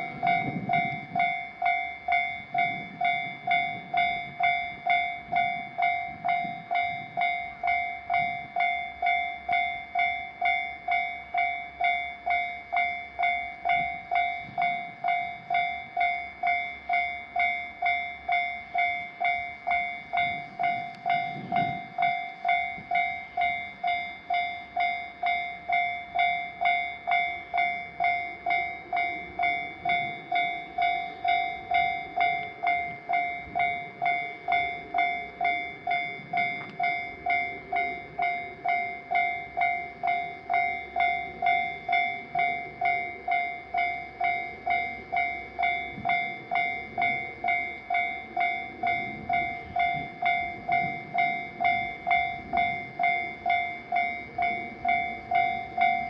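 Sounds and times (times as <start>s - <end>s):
railroad crossing bell ringing: 0.0s - 56.0s.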